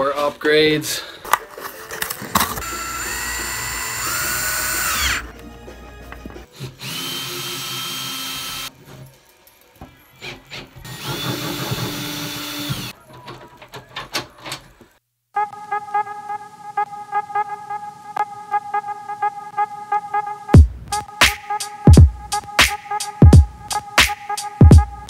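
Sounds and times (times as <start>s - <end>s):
power drill whining: 2.3s - 5.3s, 6.6s - 8.7s, 10.8s - 13.0s.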